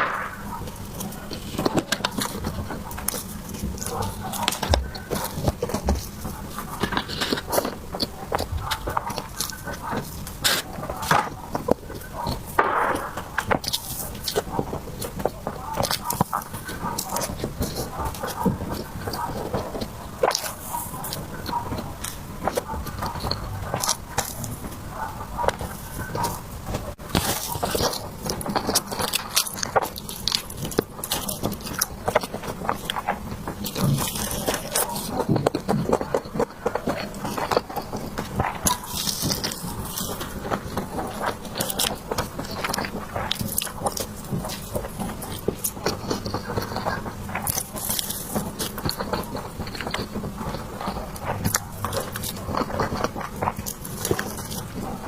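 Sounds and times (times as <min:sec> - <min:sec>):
mouth smacks and clicks: 0:00.0 - 0:55.0
wet sticky chewing: 0:00.0 - 0:55.0.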